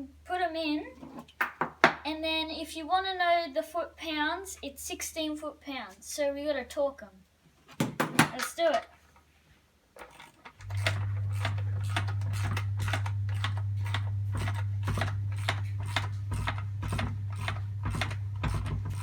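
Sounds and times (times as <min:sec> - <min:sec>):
ratchet wrench clicking: 0:10.0 - 0:19.0
loud steady low hum: 0:10.6 - 0:19.0.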